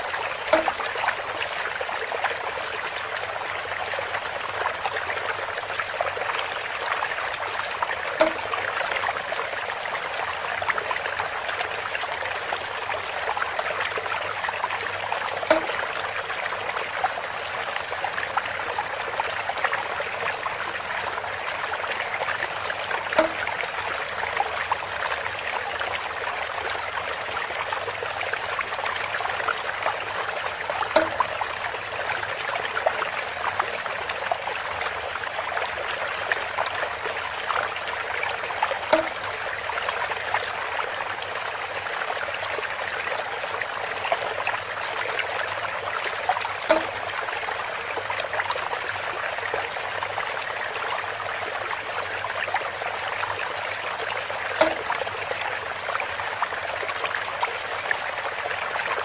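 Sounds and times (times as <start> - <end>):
water trickling through bamboo: 0.0 - 59.0
hollow bamboo knock: 0.5 - 1.0, 8.2 - 8.6, 15.5 - 15.8, 23.2 - 23.6, 30.9 - 31.4, 38.9 - 39.4, 46.7 - 47.0, 54.6 - 55.0.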